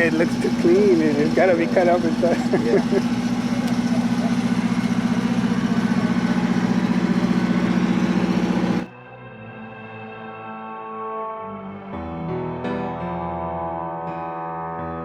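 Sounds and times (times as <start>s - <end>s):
race car engine idling: 0.0s - 8.9s.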